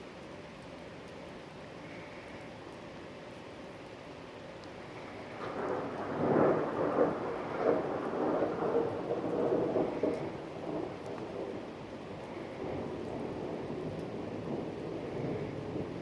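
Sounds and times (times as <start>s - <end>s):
light rain: 0.0s - 16.0s
thunder rumble: 4.9s - 16.0s.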